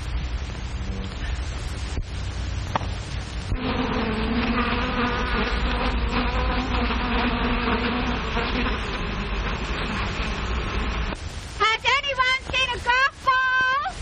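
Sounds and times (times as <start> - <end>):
low hum: 0.0 - 11.6
faint buzzing tone: 0.0 - 12.3
film soundtrack hiss: 0.0 - 14.0.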